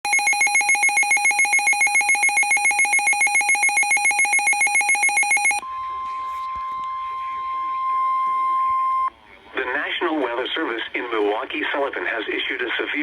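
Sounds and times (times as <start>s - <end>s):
steady single-pitch alarm tone: 0.1s - 9.1s
warbling electronic alert alarm: 0.1s - 9.1s.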